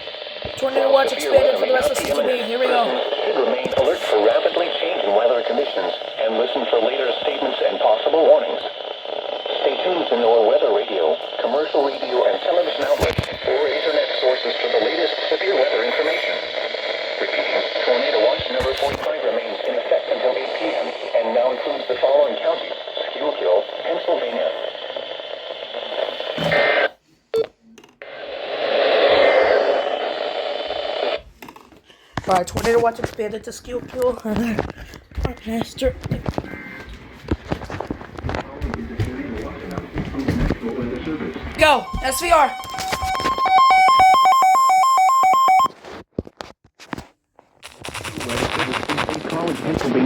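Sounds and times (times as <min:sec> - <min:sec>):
radio static hiss: 0:00.0 - 0:31.3, 0:32.2 - 0:46.1, 0:47.6 - 0:50.0
recorded voice speaking: 0:00.5 - 0:08.7, 0:09.6 - 0:16.4, 0:17.2 - 0:24.6, 0:32.2 - 0:36.5, 0:38.5 - 0:43.4, 0:48.3 - 0:50.0
faint data tones: 0:40.7 - 0:45.7
short beep: 0:41.6 - 0:45.7.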